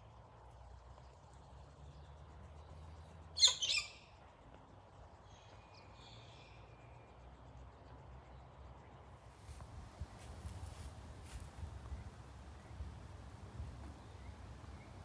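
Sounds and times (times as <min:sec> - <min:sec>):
bird two-part call: 0:03.4 - 0:04.0
high bird chirps: 0:03.4 - 0:04.0.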